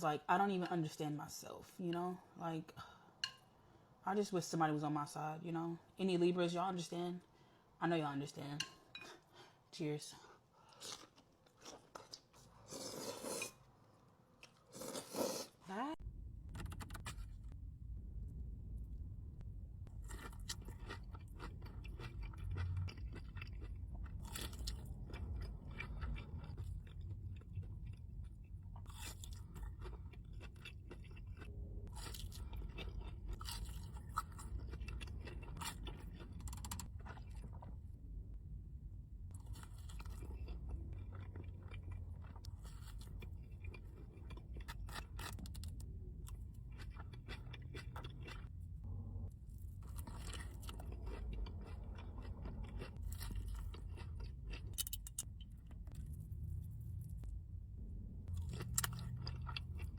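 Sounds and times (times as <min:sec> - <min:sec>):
crunching and chewing crispy food: 0:10.6 - 0:13.6, 0:19.9 - 0:37.9, 0:39.3 - 0:57.3, 0:58.2 - 0:59.9
steady low hum: 0:16.0 - 0:59.9.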